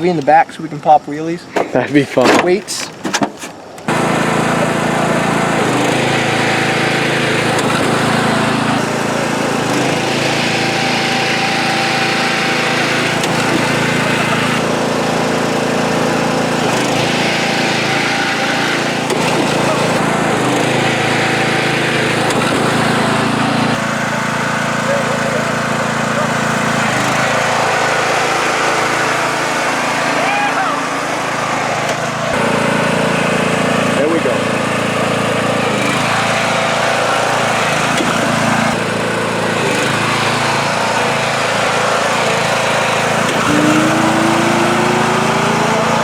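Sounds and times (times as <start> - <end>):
lawn mower engine running: 2.9 - 46.0.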